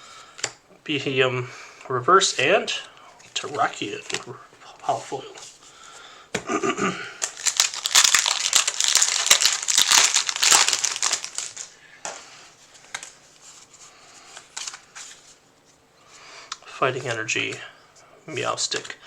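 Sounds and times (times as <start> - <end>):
cards clicking and rustling: 3.3 - 4.3, 7.2 - 12.2, 12.8 - 13.2, 14.3 - 15.3
foil wrapper tearing and crinkling: 7.2 - 11.7.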